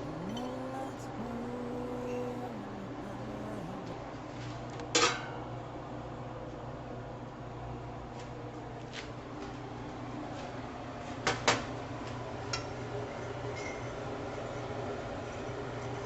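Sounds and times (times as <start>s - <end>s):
steady low hum: 0.0s - 11.1s.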